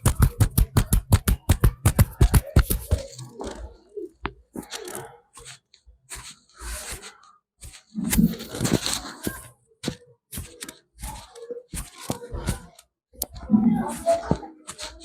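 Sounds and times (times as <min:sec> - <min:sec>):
hands rubbing and patting scalp: 0:00.0 - 0:03.3.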